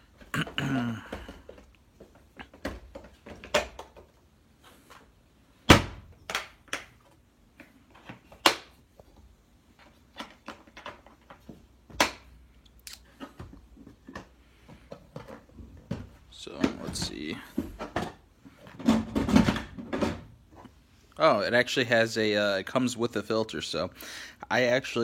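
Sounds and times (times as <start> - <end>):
knocks and clicks of handled parts: 0.2 - 4.2, 6.0 - 12.4, 13.1 - 20.8.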